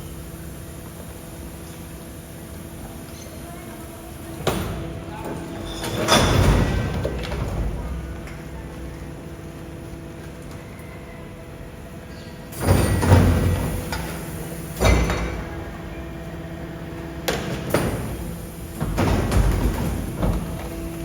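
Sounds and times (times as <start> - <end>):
engine and hydraulics humming: 0.0 - 21.0
compactor crunching and banging: 18.8 - 21.0.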